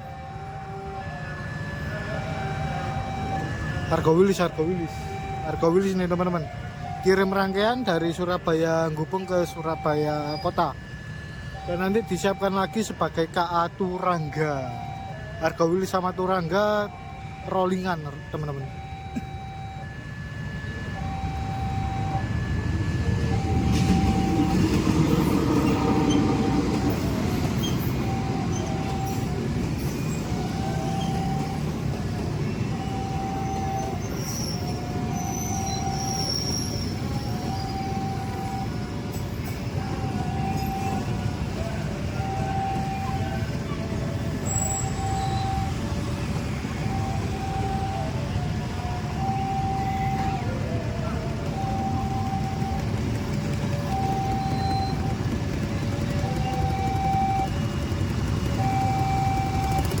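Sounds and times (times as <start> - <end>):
two-tone electronic alarm: 0.0 - 60.0
train wheels rumbling on rails: 20.6 - 60.0
high wheel squeal: 32.4 - 39.8.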